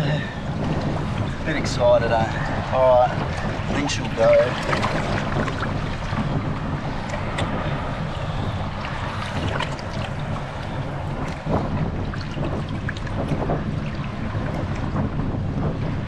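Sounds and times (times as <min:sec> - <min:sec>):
water rushing around hull: 0:00.0 - 0:16.0
wind buffeting microphone: 0:00.0 - 0:16.0
small splashes: 0:02.3 - 0:06.3.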